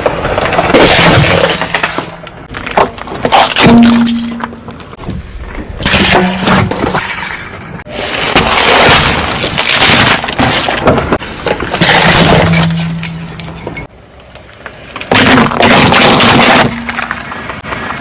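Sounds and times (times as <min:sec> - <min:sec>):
glassy crunching and shattering: 0:00.3 - 0:04.5, 0:05.8 - 0:10.9, 0:11.7 - 0:13.7, 0:15.1 - 0:17.2.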